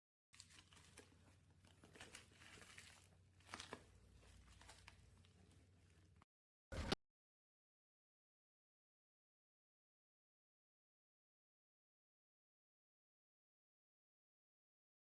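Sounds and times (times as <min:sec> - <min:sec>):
faint crinkling and rustling: 0:00.4 - 0:06.2.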